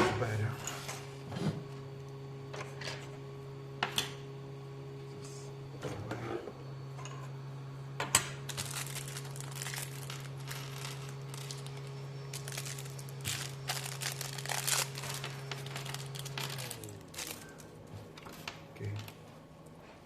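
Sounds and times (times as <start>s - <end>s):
steady low hum: 0.0s - 20.0s
plastic bags crinkling: 8.5s - 18.5s.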